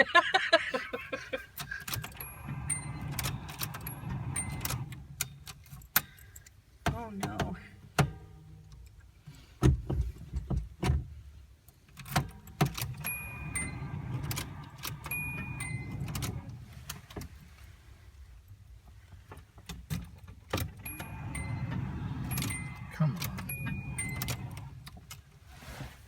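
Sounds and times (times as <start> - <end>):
engine cranking without starting: 1.1 - 6.3, 12.8 - 17.0, 20.7 - 25.3
key clicks and clunks: 1.5 - 6.5, 11.9 - 17.3, 19.6 - 25.3.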